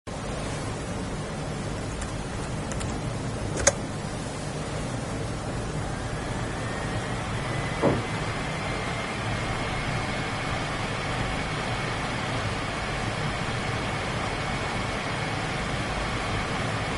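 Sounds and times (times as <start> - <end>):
high-pitched fan whine: 0.1 - 16.9
laptop cooling fan hiss: 0.1 - 16.9
sharp click: 3.6 - 3.8
dull knock: 7.8 - 8.2.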